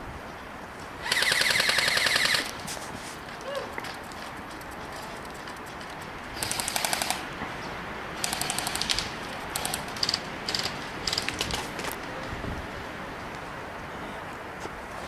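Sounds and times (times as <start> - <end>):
airsoft guns firing bursts: 6.4 - 7.2, 8.2 - 11.3.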